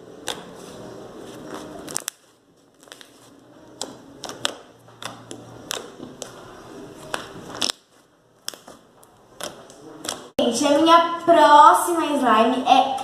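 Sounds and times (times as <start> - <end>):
slime clicking and crackling: 0.2 - 0.5, 1.5 - 6.4, 7.0 - 10.3.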